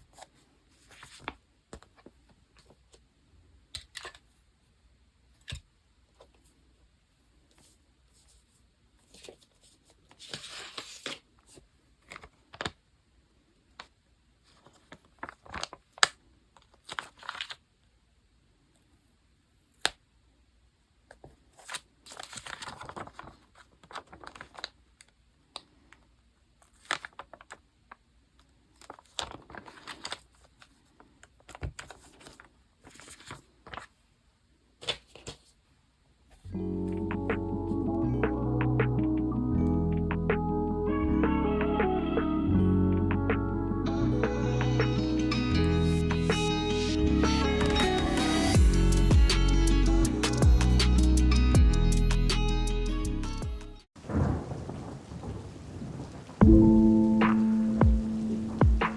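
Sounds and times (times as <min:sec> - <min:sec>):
paper rustling and tearing: 0:07.6 - 0:12.7, 0:14.5 - 0:17.6, 0:21.3 - 0:24.8, 0:28.6 - 0:33.9, 0:34.8 - 0:35.6.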